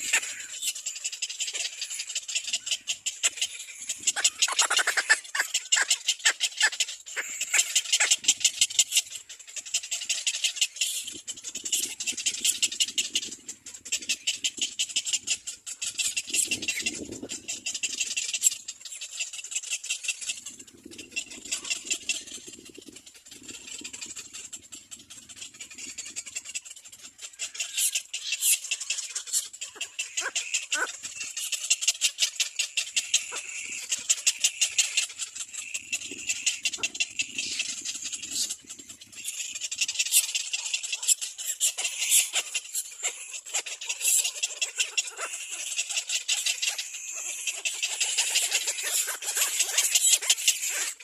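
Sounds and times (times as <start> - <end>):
nestlings ticking chatter: 0.0 - 51.0.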